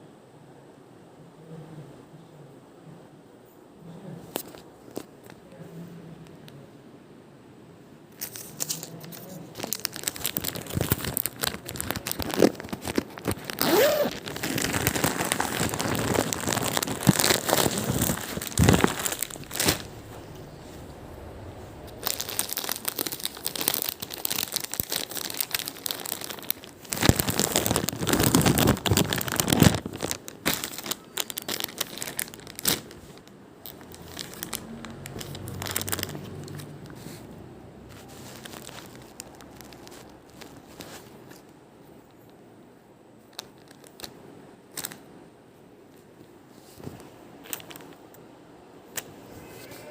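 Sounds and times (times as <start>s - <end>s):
packaging crinkling and rustling: 4.3s - 5.4s, 8.2s - 21.0s, 21.7s - 42.4s, 43.2s - 45.1s, 46.0s - 48.2s
packaging clicks: 8.2s - 19.9s, 22.0s - 37.0s.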